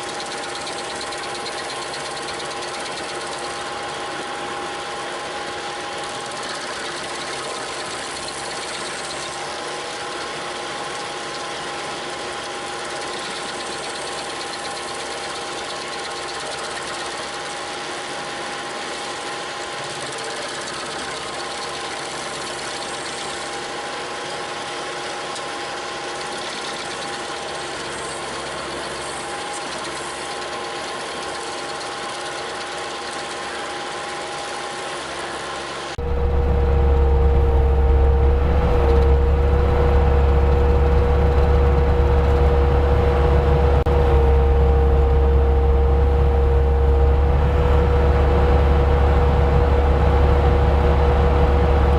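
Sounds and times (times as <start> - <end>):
diesel engine running: 36.0 - 51.9
high hydraulic whine: 36.0 - 51.9.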